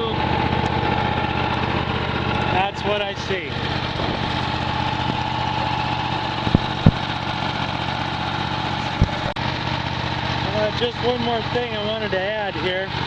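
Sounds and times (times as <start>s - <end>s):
generator engine running: 0.0s - 13.0s
steady high hum: 3.4s - 7.4s, 8.8s - 9.4s
low knocks: 6.4s - 7.2s.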